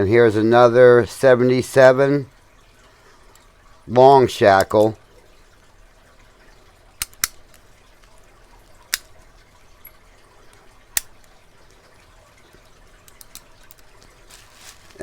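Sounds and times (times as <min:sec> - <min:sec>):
padlock clicks: 0:07.0 - 0:07.6, 0:13.0 - 0:13.9.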